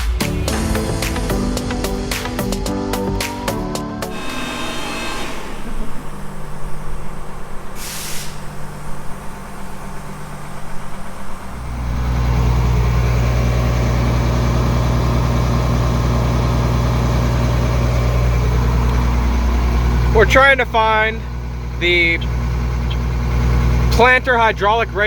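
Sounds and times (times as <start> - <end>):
tractor engine running: 0.0 - 25.0
short hiss of air: 7.8 - 8.6.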